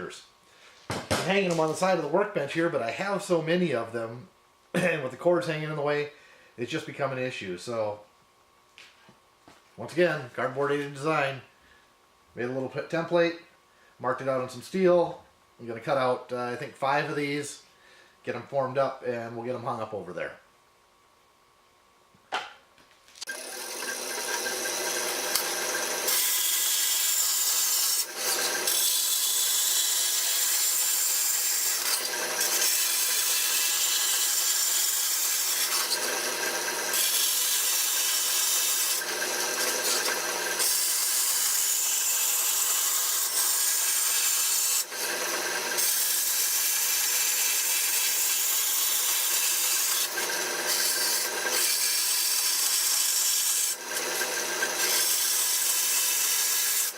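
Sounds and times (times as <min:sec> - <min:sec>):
angle grinder cutting steel: 0:23.3 - 0:56.9.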